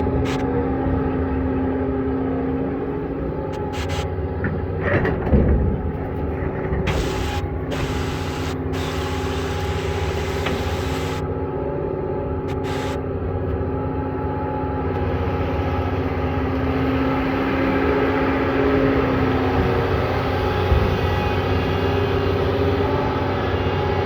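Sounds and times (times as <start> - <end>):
excavator diesel engine running: 0.0 - 0.9, 3.4 - 4.8, 6.5 - 11.6, 12.4 - 24.0.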